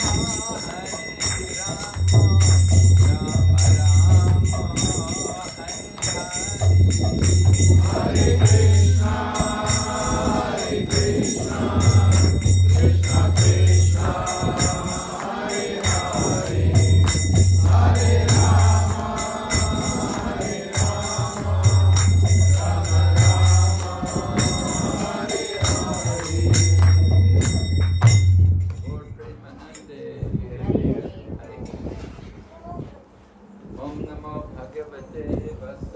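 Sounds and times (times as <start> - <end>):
hand cymbals clinking: 0.0 - 29.9
group singing: 7.4 - 27.4.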